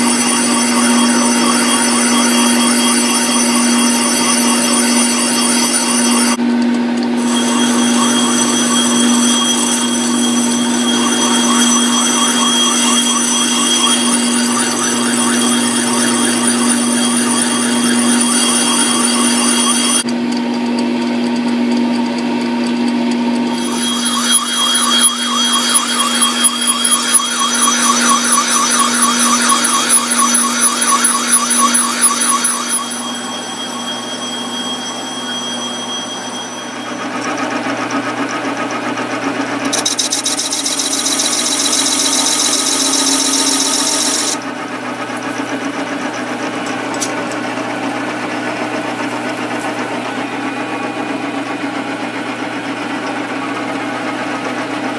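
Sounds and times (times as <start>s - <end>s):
lathe motor whine: 0.0s - 6.4s, 7.0s - 20.1s, 23.4s - 39.0s, 39.7s - 44.5s.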